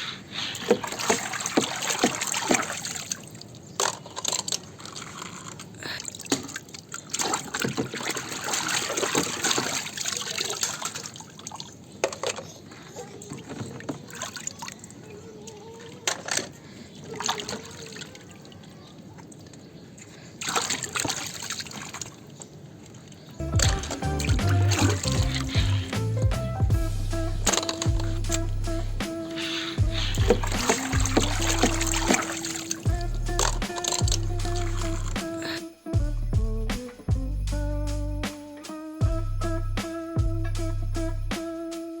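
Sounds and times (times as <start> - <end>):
water splashing and trickling: 0.0 - 41.3
plastic toys clicking and knocking: 3.8 - 5.7, 12.0 - 12.6, 16.0 - 16.6.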